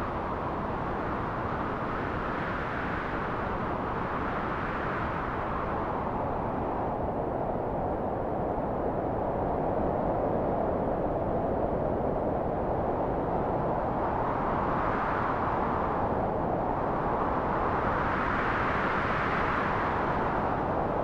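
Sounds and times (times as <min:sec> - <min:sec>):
low rushing wind: 0:00.0 - 0:21.0.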